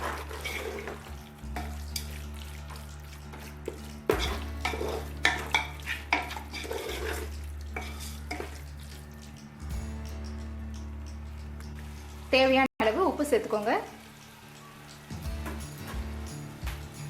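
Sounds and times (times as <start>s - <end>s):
spoon scraping pot: 0.0s - 1.0s, 3.3s - 8.7s
food sizzling: 0.0s - 17.0s.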